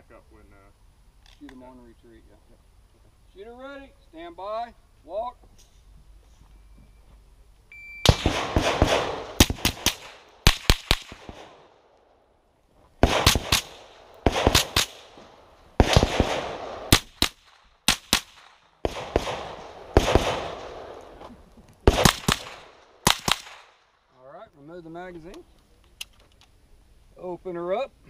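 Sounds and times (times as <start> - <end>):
shot timer beep: 7.7 - 8.1
rifle shots with ringing echo: 8.0 - 11.9, 13.0 - 21.2, 21.8 - 24.0.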